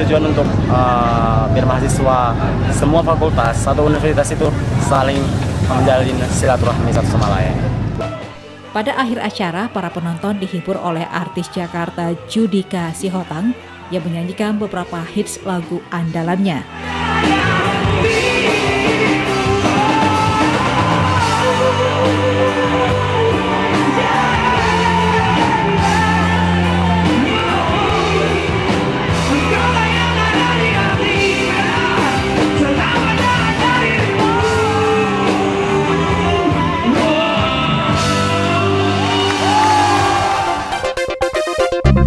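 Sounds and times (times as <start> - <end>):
bass: 0.0 - 42.0
guitar: 0.0 - 42.0
man singing: 17.0 - 40.0.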